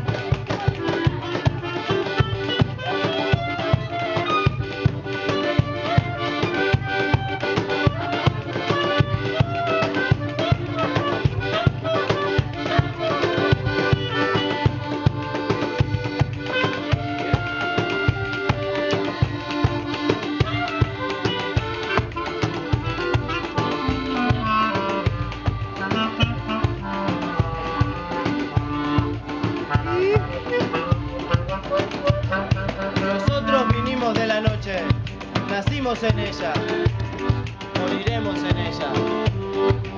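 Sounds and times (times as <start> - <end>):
band playing instrumental music: 0.0 - 39.9
fast drum beat: 29.7 - 39.9.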